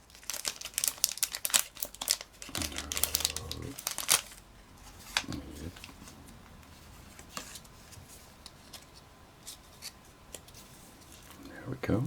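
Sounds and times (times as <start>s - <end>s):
foil pack rustling: 0.0s - 2.3s.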